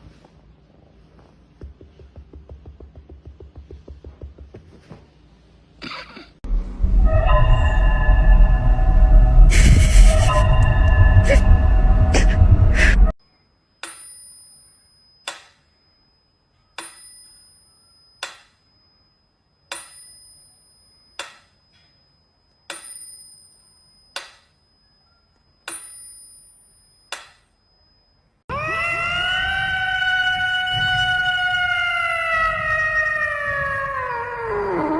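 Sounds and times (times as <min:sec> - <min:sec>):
cat yowling: 0:28.5 - 0:34.9.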